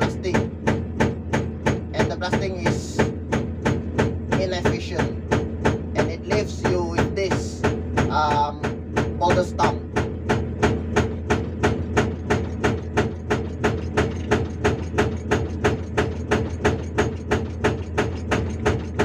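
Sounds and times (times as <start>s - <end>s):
excavator engine running: 0.0s - 19.0s
hydraulic breaker hammering rock: 0.0s - 19.0s.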